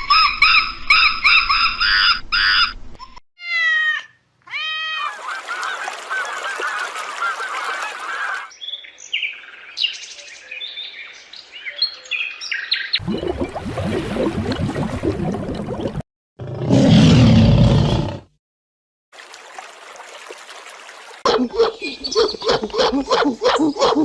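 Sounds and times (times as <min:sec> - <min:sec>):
geese honking: 0:05.1 - 0:08.5.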